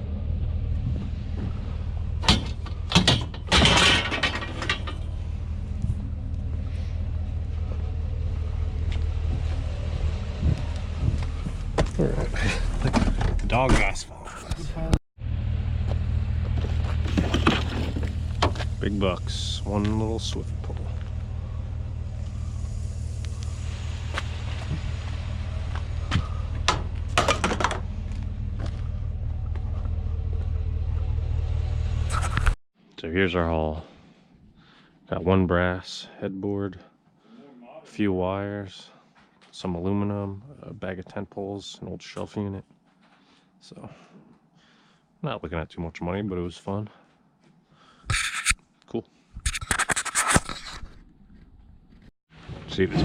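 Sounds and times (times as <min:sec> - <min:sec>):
vehicle engine idling: 0:00.0 - 0:32.5
low rumble: 0:00.0 - 0:32.6
scrap scraping: 0:16.6 - 0:18.7, 0:32.0 - 0:32.6, 0:47.9 - 0:48.6, 0:49.4 - 0:51.1
sharp knocks of scrap: 0:48.1 - 0:48.6, 0:49.4 - 0:50.9.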